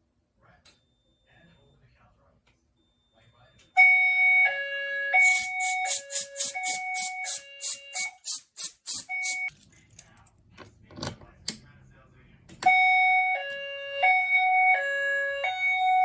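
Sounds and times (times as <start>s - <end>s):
two-tone fire alarm: 3.7s - 9.5s, 12.6s - 16.0s.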